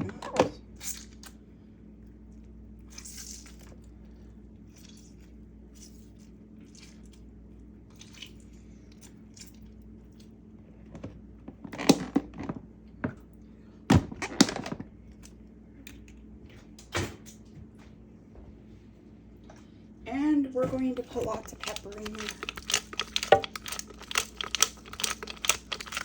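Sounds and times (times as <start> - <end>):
kitchen items knocking and clattering: 13.9 - 14.9, 20.6 - 25.4.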